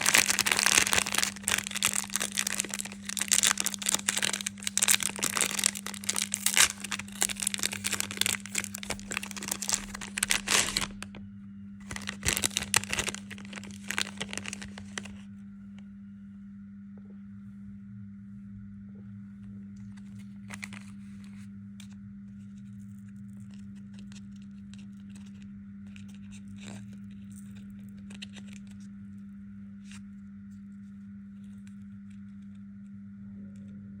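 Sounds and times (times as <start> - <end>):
candy wrappers crinkling: 0.0 - 11.2, 11.8 - 15.2, 20.5 - 21.0
steady low hum: 0.0 - 34.0.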